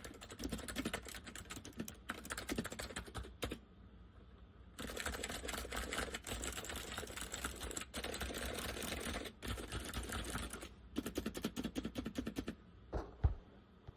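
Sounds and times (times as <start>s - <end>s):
fast keyboard typing: 0.0s - 3.6s, 4.8s - 12.6s.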